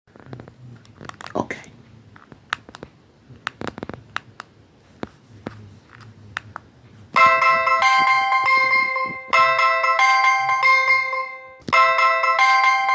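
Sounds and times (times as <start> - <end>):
phone ringtone chiming melody: 7.2 - 12.9.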